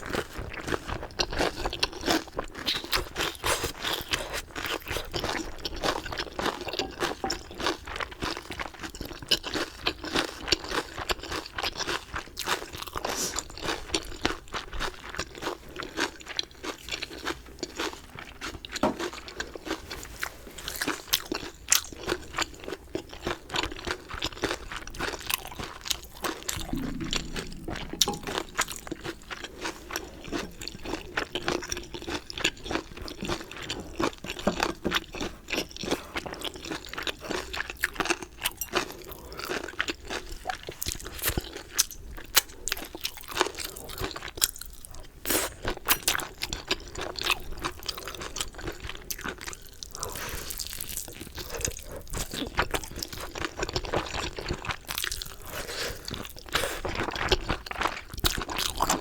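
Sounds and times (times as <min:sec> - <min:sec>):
chewing and crunching: 0:02.6 - 0:07.0, 0:32.0 - 0:59.0.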